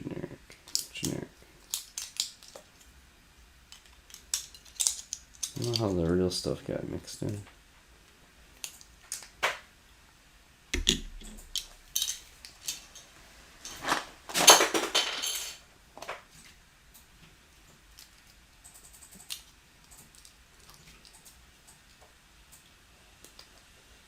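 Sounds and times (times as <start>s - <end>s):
plastic bricks clicking and clattering: 1.7s - 2.9s, 3.7s - 6.0s.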